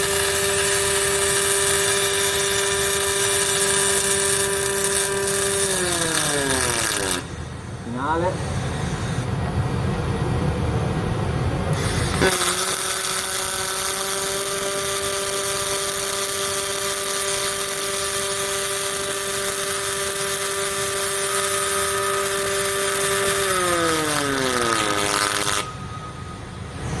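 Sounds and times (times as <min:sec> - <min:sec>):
electric motor whining and spinning down: 0:00.8 - 0:07.3, 0:11.9 - 0:26.1.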